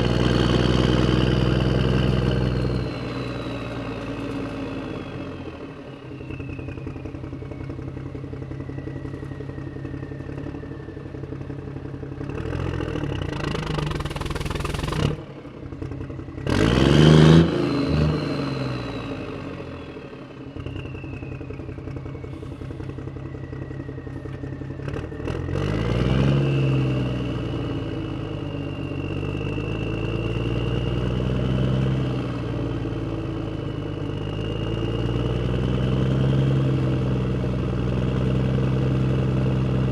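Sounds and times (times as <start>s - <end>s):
engine whine: 0.0s - 39.9s
vehicle engine revving: 12.2s - 19.6s, 24.1s - 27.8s.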